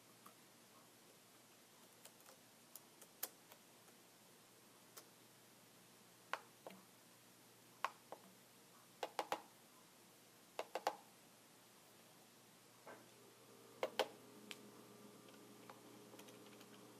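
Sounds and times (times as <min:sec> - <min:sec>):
keyboard keys clicking: 0:15.6 - 0:16.8.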